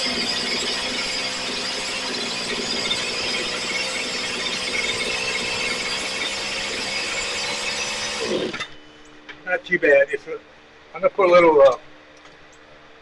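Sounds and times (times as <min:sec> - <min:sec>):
string trimmer engine running: 0:00.0 - 0:08.7.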